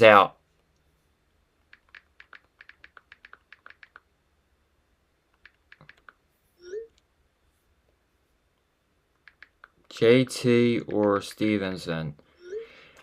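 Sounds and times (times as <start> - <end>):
keyboard key clicks: 1.7 - 4.0, 5.4 - 6.2, 9.2 - 9.8.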